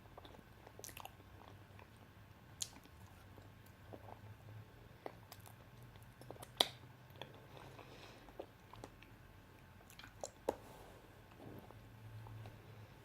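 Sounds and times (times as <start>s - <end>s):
faint low hum: 0.0s - 13.0s
sticky chewing and lip smacks: 2.6s - 4.2s, 5.0s - 9.1s, 9.8s - 10.6s.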